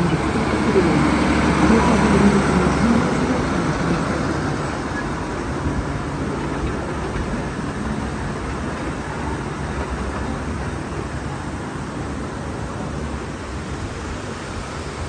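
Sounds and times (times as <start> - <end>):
diesel locomotive engine: 0.0 - 15.0
train rumbling: 0.0 - 15.0.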